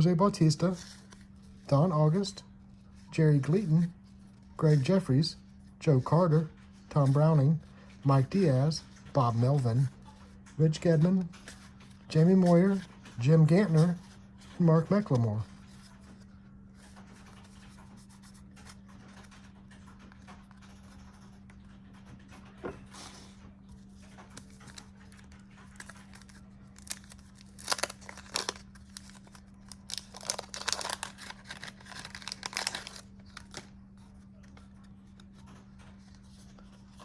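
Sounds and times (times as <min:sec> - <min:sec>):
wax paper wrapper tearing: 0:25.7 - 0:33.8.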